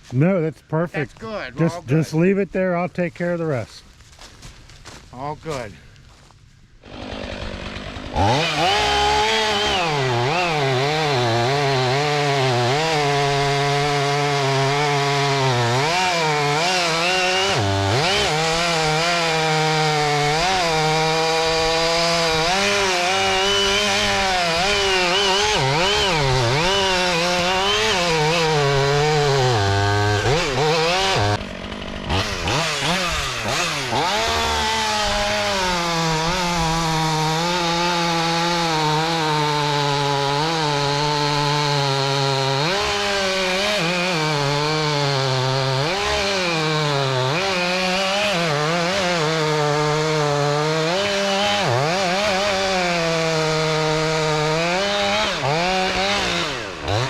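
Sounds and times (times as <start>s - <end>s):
chainsaw cutting wood: 6.8s - 57.0s.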